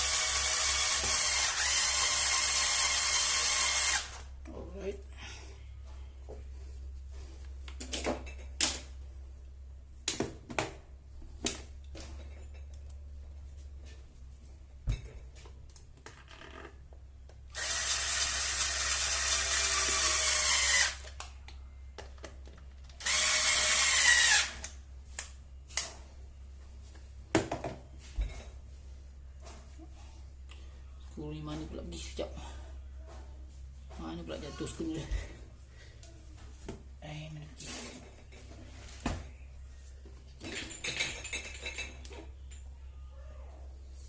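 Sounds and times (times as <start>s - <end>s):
power drill driving screws: 0.0s - 4.2s, 17.5s - 21.2s, 23.0s - 24.7s.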